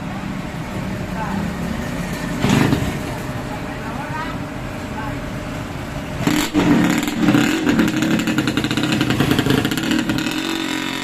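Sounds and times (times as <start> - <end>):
two-stroke motorcycle engine revving: 6.0 - 11.0.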